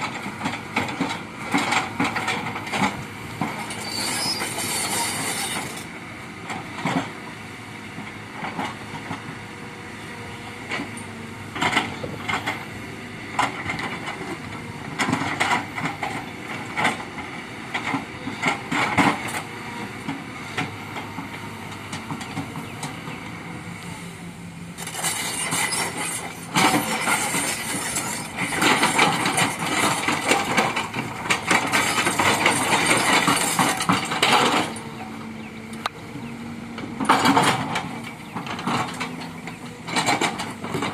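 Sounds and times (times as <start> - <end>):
excavator running: 0.0 - 40.9
metallic grinding and squealing: 3.7 - 5.9, 24.8 - 30.4.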